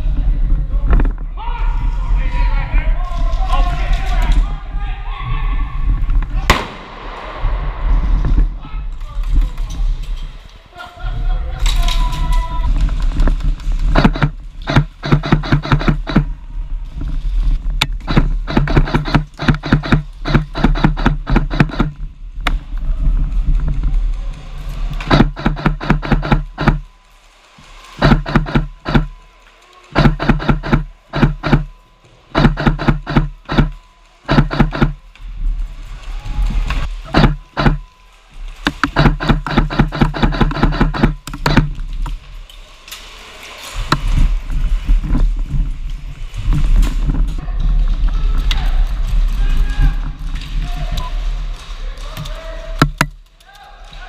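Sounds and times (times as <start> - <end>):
low rumbling: 0.0 - 29.4
hazy low sound: 4.6 - 10.5, 11.1 - 42.5
airsoft gun firing: 6.4 - 7.8, 13.9 - 16.4, 17.8 - 22.0, 25.0 - 26.8, 28.0 - 29.1, 30.0 - 31.8, 32.4 - 35.0, 37.1 - 37.8, 38.7 - 41.8
sharp click: 14.0 - 16.3, 17.8 - 22.0, 28.0 - 29.1, 30.0 - 31.8, 32.4 - 35.0, 37.1 - 37.8, 38.6 - 41.8.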